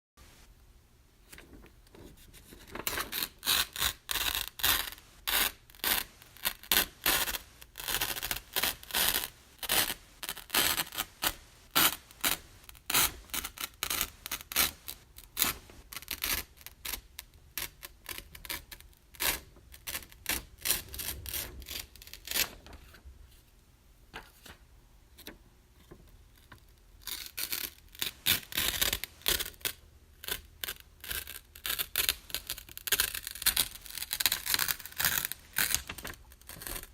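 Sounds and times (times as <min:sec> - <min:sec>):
paper ripping: 0:33.0 - 0:36.9.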